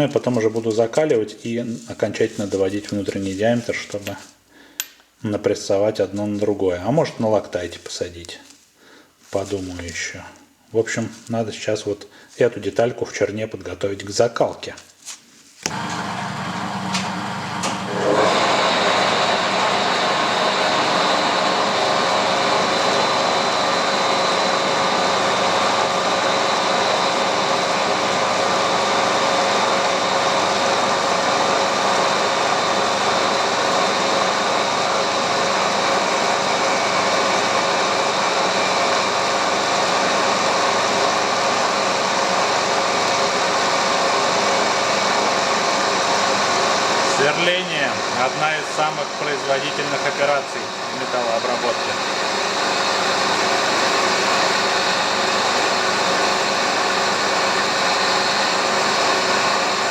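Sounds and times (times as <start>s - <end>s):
metal lathe whining: 15.7s - 59.9s.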